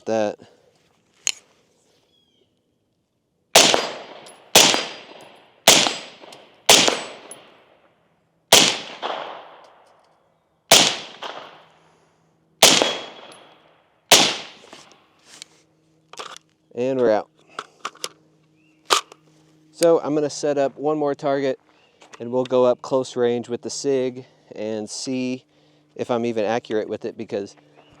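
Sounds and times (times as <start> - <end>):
suppressed rifle shots: 3.5 - 7.6, 8.5 - 9.9, 10.7 - 11.7, 12.6 - 14.9
echo of gunshots: 3.5 - 7.7, 8.5 - 9.9, 10.7 - 11.9, 12.6 - 14.9.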